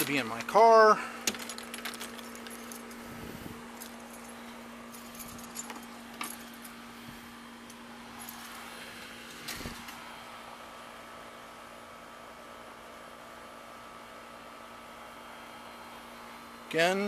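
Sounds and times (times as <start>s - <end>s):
steady low hum: 0.0s - 17.0s
light clicks and metallic rattles: 1.2s - 3.0s, 3.8s - 6.8s.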